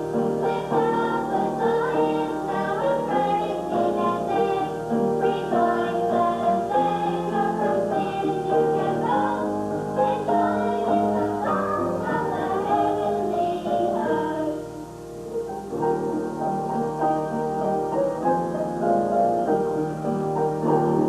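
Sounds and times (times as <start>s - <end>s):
voices singing: 0.0s - 14.8s
instrumental accompaniment: 0.0s - 21.0s.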